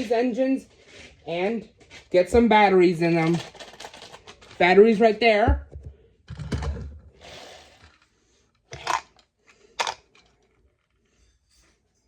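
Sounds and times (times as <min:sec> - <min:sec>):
plastic packaging rustling: 0:02.9 - 0:05.2.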